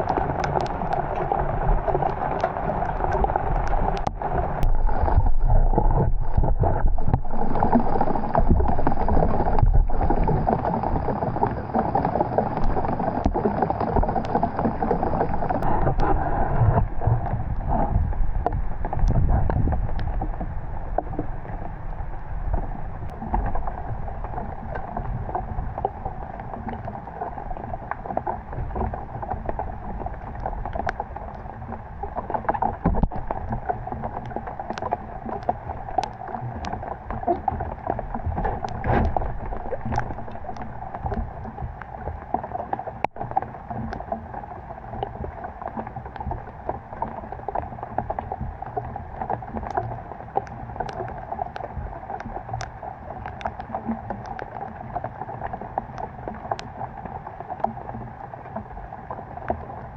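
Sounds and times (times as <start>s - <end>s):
sharp taps and drips: 0.0s - 4.2s
low rumble: 0.0s - 49.8s
water sloshing and splashing: 0.0s - 59.9s.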